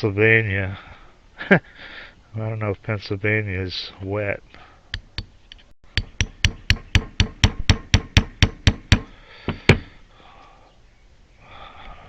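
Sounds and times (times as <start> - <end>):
hammer tapping a file: 4.9 - 9.9.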